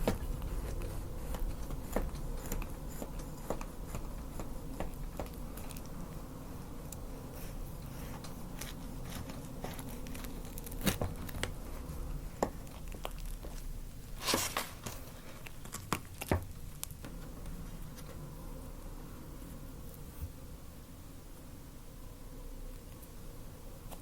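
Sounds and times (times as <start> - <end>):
paper wrapper crinkling and tearing: 7.9 - 17.0.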